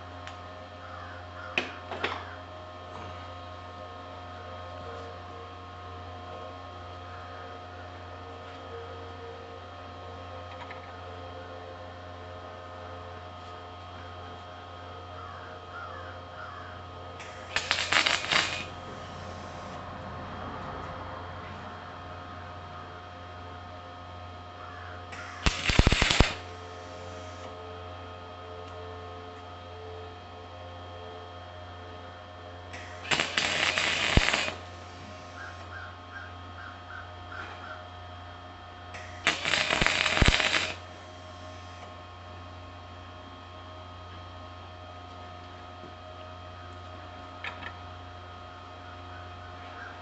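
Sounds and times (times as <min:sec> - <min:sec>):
electric hum with held tones: 0:00.0 - 0:50.0
motor driving drill press: 0:17.2 - 0:19.8, 0:25.1 - 0:27.5, 0:32.8 - 0:35.8, 0:39.0 - 0:41.0.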